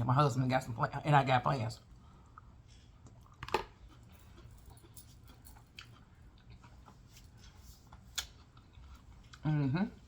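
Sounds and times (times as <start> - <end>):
chewing and mouth sounds: 2.2 - 10.0.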